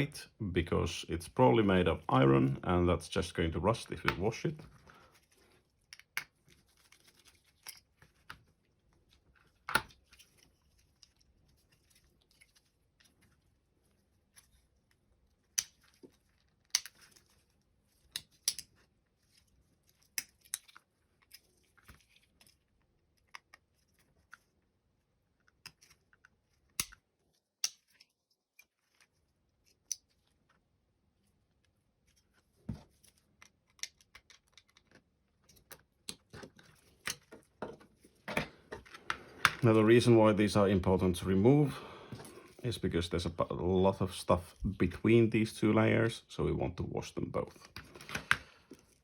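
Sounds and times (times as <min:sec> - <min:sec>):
plastic mouse parts clicking: 0:33.4 - 0:37.4.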